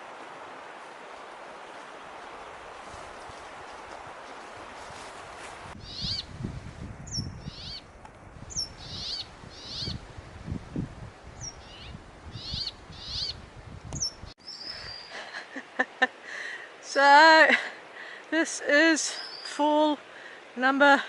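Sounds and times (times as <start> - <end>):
bird calling: 5.8 - 6.3, 8.5 - 10.0, 11.4 - 13.4.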